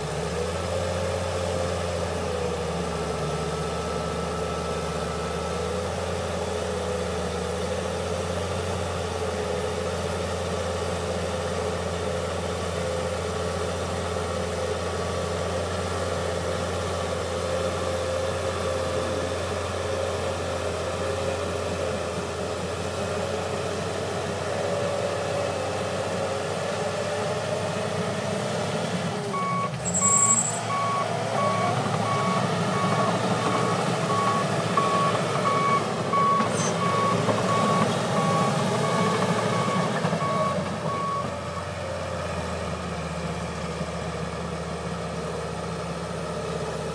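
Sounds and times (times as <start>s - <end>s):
bulldozer diesel engine running: 0.0s - 46.9s
reverse alarm beeping: 29.4s - 41.3s
high squeal: 29.8s - 30.9s, 36.4s - 37.0s.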